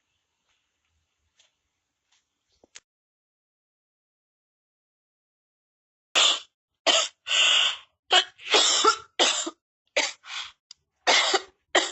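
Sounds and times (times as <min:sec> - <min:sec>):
person coughing: 0:08.1 - 0:10.2, 0:11.1 - 0:11.9.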